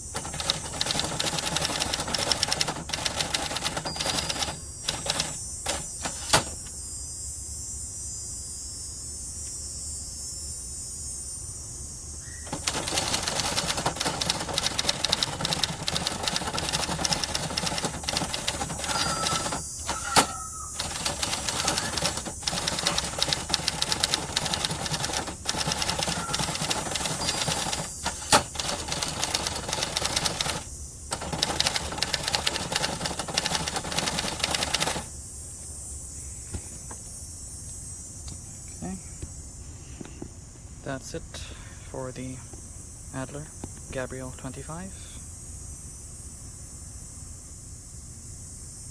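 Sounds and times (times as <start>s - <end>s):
manual typewriter clatter: 0.0s - 6.7s, 12.5s - 35.1s.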